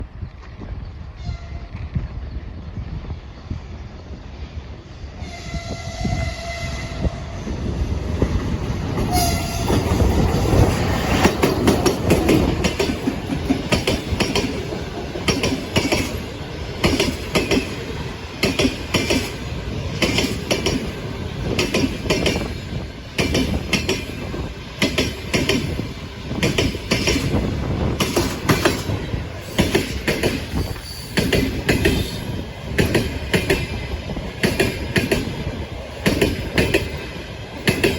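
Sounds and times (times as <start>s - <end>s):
train horn: 1.2s - 1.9s, 5.2s - 7.4s, 9.1s - 10.1s
train wheels clattering over rail joints: 8.0s - 37.9s.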